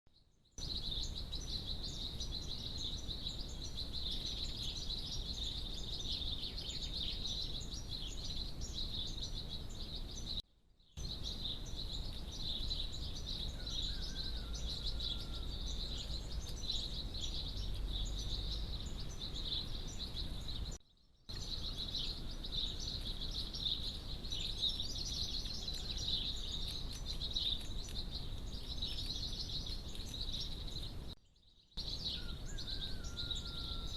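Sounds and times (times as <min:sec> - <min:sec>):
small birds chirping: 0:00.1 - 0:33.9.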